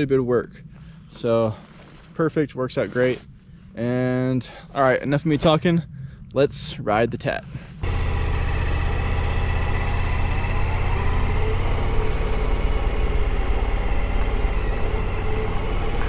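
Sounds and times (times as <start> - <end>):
motorcycle engine running: 7.8 - 16.0.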